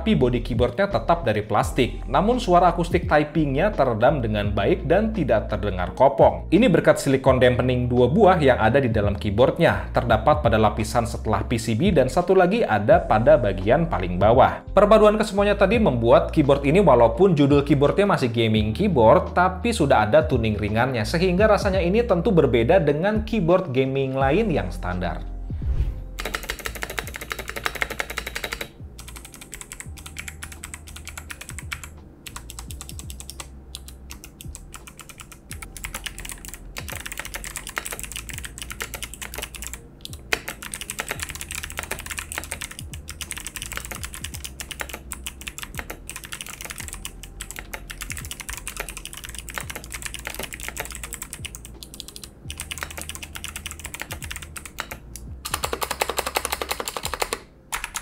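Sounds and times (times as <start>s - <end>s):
clicky keyboard typing: 26.2s - 58.0s.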